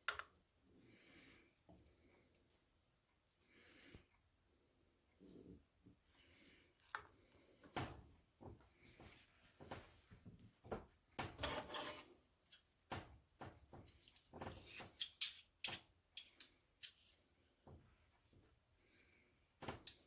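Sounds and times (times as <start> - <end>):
scraping rub: 11.4 - 12.2.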